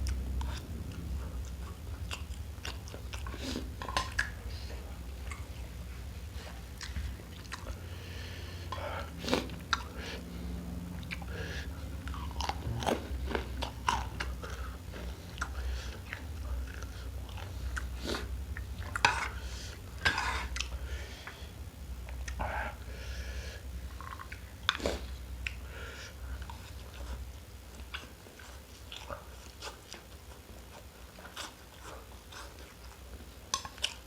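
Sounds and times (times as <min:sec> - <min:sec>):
chewing and crunching: 0:00.0 - 0:22.9, 0:23.6 - 0:34.0
low steady hum: 0:00.0 - 0:34.0.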